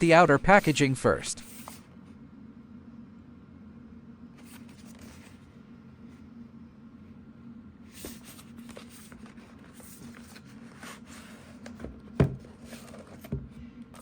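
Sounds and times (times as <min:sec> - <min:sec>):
steady low hum: 0:00.0 - 0:14.0
cardboard rustling: 0:08.0 - 0:13.4.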